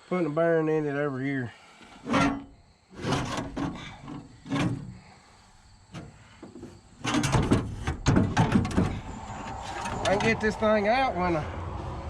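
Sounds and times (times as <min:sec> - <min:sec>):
tools and metal parts knocking: 0:06.0 - 0:09.1.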